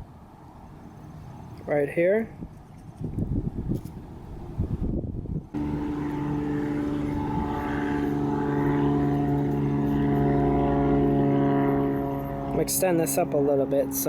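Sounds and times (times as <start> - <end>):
engine running steadily: 5.5 - 14.0.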